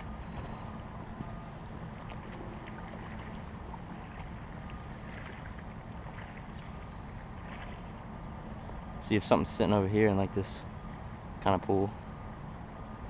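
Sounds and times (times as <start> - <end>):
stream water rushing: 0.0 - 8.9.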